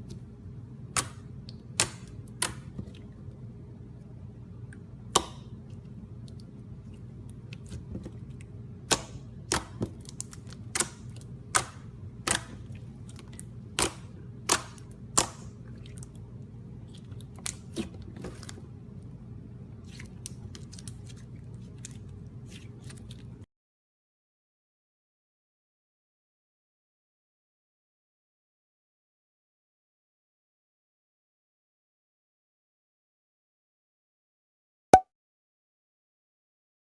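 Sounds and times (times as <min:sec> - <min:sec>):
steady low hum: 0:00.0 - 0:23.5.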